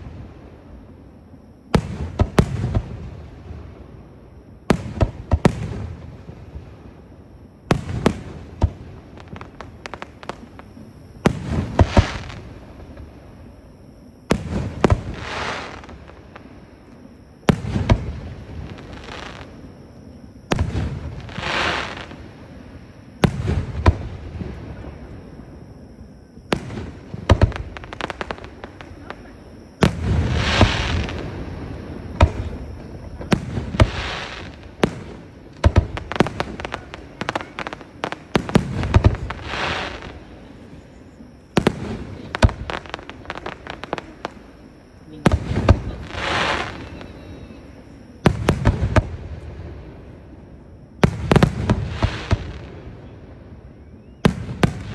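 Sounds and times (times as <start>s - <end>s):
firework booms and cracks: 0.0s - 0.9s, 1.7s - 7.1s, 7.7s - 13.6s, 14.3s - 19.7s, 20.4s - 40.9s, 41.5s - 50.3s, 51.0s - 53.5s, 54.2s - 54.9s
crackling firework tails: 0.0s - 54.9s
firework pops: 26.5s - 31.5s, 32.1s - 40.3s.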